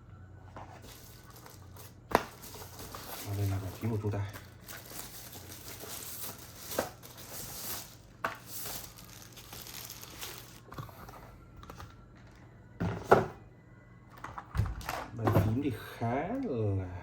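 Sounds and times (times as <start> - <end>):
packaging crinkling and rustling: 0.5 - 12.4.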